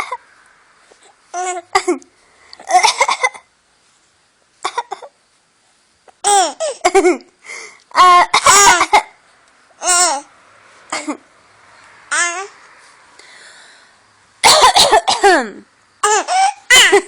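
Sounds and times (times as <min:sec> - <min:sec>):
child laughing and coughing: 0:02.7 - 0:03.5, 0:04.6 - 0:05.1, 0:06.3 - 0:07.3, 0:08.0 - 0:09.2, 0:10.9 - 0:11.2, 0:14.4 - 0:17.0.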